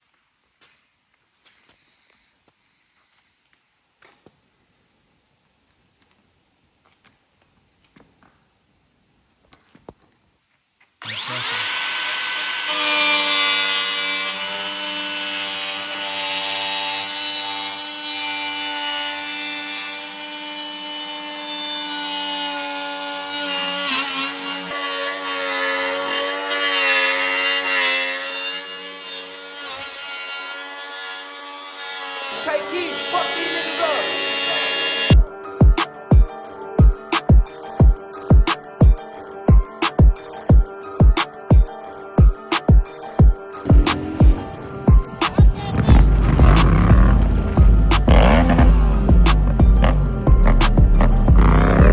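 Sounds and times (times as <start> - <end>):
angle grinder whining: 11.0 - 35.2, 43.5 - 51.9
grinding hiss: 43.0 - 51.9.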